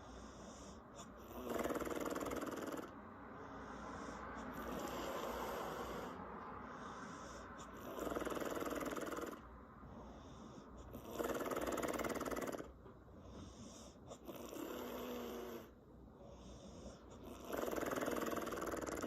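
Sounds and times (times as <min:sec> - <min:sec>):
woman snoring with lip flapping: 0:01.2 - 0:02.9, 0:04.5 - 0:06.1, 0:07.8 - 0:09.4, 0:10.9 - 0:12.7, 0:14.2 - 0:15.7, 0:17.2 - 0:19.0.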